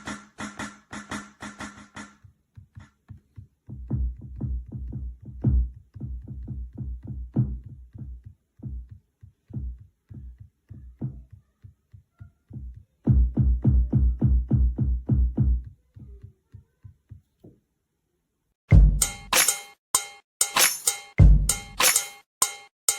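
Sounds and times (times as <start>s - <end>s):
fingers tapping drum pads: 0.0s - 16.2s
electronic kick drum thumps: 3.4s - 11.4s, 12.5s - 15.7s, 18.7s - 19.6s, 20.5s - 21.9s.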